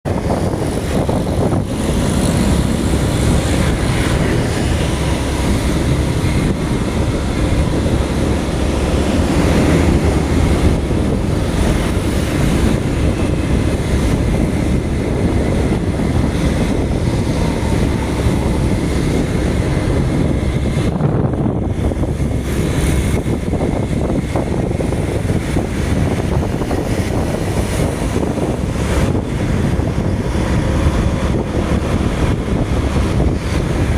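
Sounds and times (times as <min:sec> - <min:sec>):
vehicle and road noise: 0:00.0 - 0:33.9
wind buffeting on microphone: 0:00.0 - 0:33.9.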